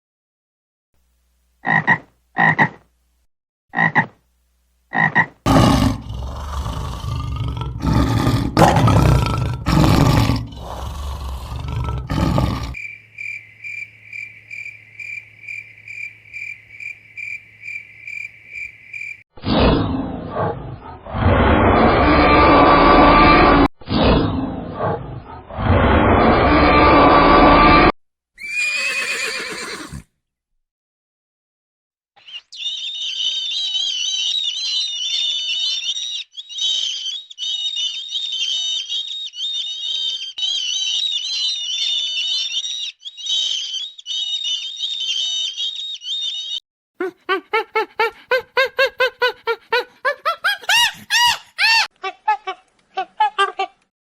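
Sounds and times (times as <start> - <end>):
animal roaring: 5.5 - 12.8, 19.8 - 23.7
high-pitched chirping: 32.2 - 46.6.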